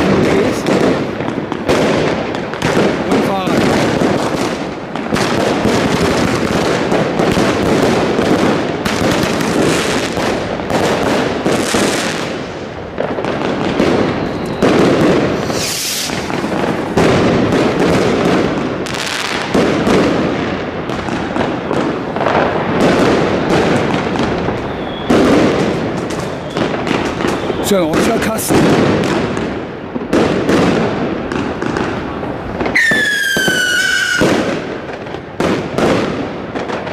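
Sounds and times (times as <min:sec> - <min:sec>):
fireworks bangs and crackles: 0:00.0 - 0:36.9
firework hiss: 0:13.9 - 0:19.5.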